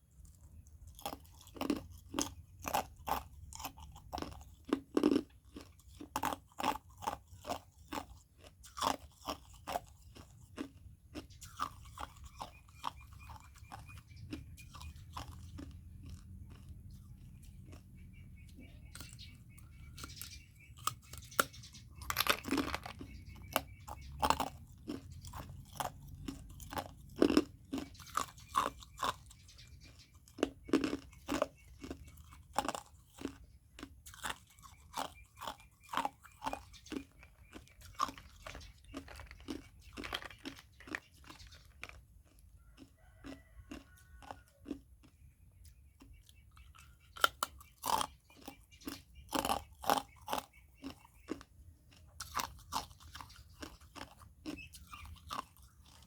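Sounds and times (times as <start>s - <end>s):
person crunching ice: 32.6s - 42.4s.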